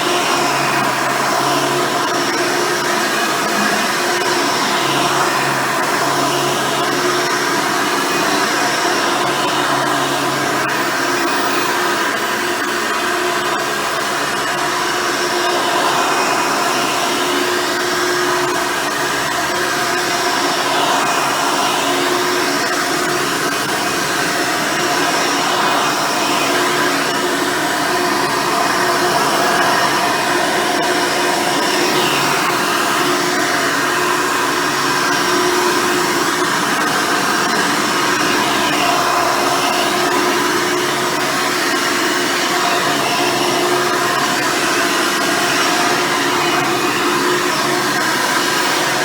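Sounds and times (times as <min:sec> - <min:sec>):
vacuum cleaner whining: 0:00.0 - 0:49.0.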